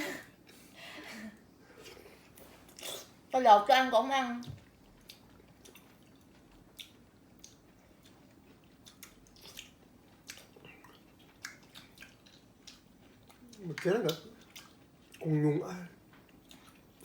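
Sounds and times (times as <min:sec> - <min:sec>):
wet chewing: 0:04.4 - 0:15.4, 0:16.0 - 0:17.0.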